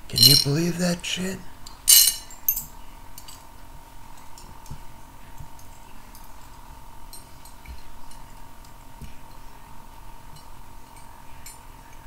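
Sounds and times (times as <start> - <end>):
thin steady whine: 0.0 - 12.0
small metal screws clinking: 1.9 - 3.4.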